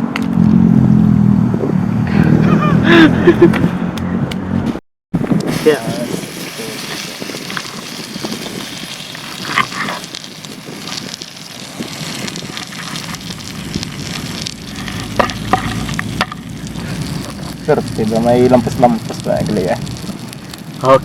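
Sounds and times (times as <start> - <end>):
chicken sizzling in hot oil: 5.2 - 21.0.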